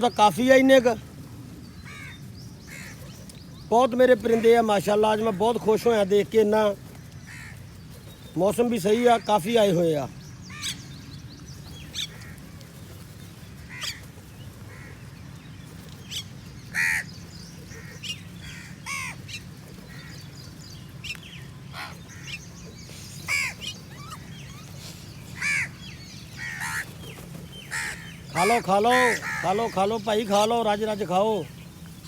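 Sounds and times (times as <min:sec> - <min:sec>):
crows cawing: 0:01.7 - 0:03.2, 0:07.0 - 0:07.8, 0:10.4 - 0:11.0, 0:11.9 - 0:12.8, 0:13.6 - 0:15.4, 0:16.0 - 0:30.9.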